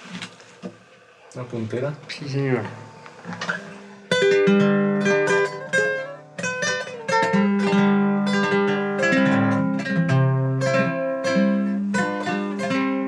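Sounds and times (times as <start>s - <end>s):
acoustic guitar picked melody: 2.6s - 13.0s.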